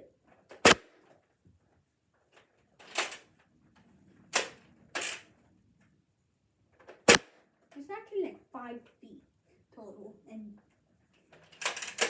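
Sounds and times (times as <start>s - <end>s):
toy blaster clacks: 2.8s - 3.2s, 4.4s - 5.2s, 11.5s - 12.0s.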